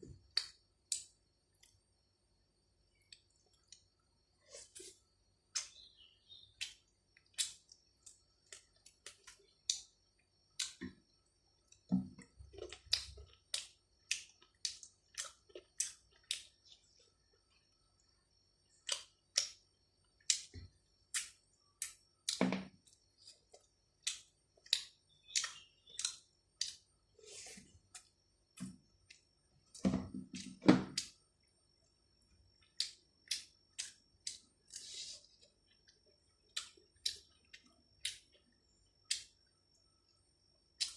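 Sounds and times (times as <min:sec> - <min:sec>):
mouth chewing food: 0:11.6 - 0:17.7, 0:21.1 - 0:29.3, 0:32.5 - 0:39.3.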